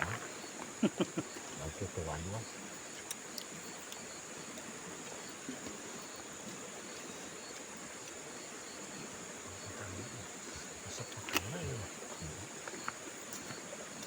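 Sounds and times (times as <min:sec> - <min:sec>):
insects chirring: 0:00.0 - 0:14.0
river flowing: 0:00.0 - 0:14.0
faint clicks: 0:03.0 - 0:05.8, 0:10.6 - 0:11.9, 0:12.6 - 0:14.0.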